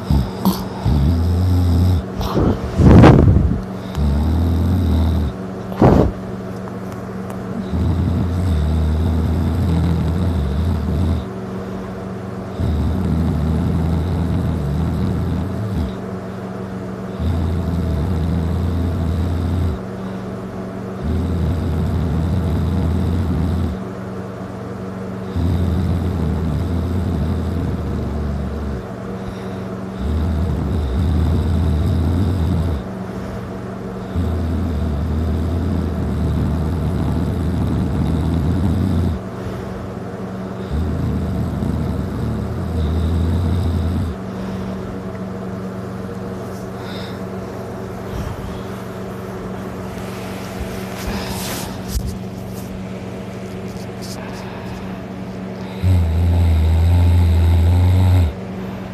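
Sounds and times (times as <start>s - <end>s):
person snoring loudly: 0.0s - 6.2s, 7.6s - 11.4s, 12.5s - 16.0s, 17.1s - 19.9s, 21.0s - 23.8s, 25.2s - 33.0s, 34.0s - 39.6s, 40.6s - 44.8s, 53.7s - 58.9s.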